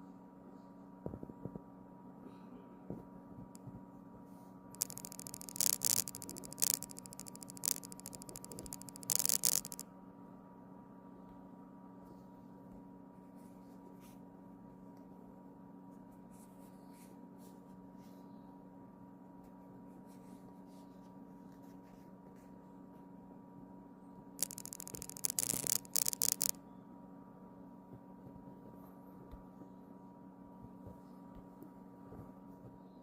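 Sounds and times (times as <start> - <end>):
camera module faint hum with ticks: 2.8 - 9.9, 11.2 - 15.2, 24.4 - 26.8
loud buzzing rattle of clicks: 4.8 - 9.8, 24.4 - 26.6.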